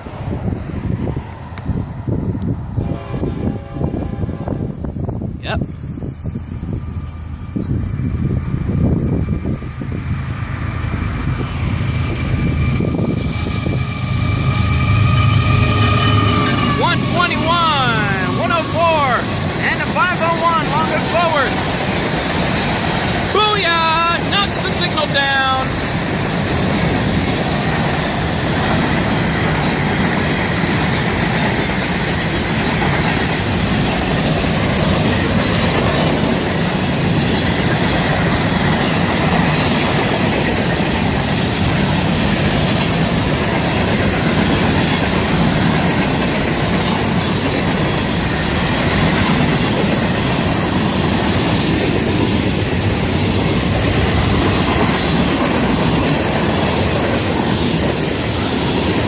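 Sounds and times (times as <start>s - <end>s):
train wheels rolling on rails: 0.0s - 59.0s.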